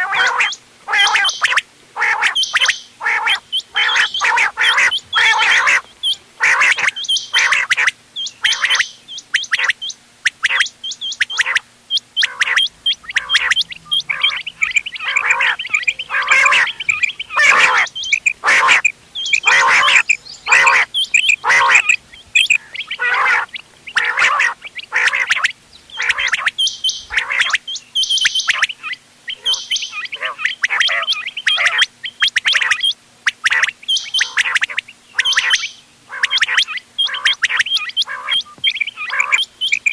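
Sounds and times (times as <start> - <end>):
faint steady hum: 0.0 - 39.9
quail calling: 0.0 - 39.9.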